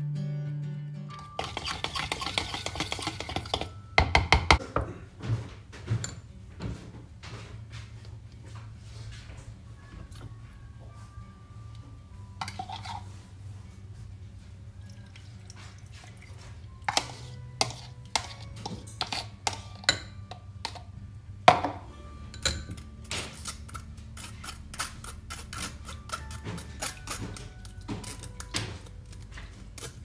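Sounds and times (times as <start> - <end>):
utensils and dishes clinking: 1.2 - 6.3, 12.4 - 13.2, 14.8 - 20.9, 21.5 - 30.0
low steady hum: 4.9 - 30.0.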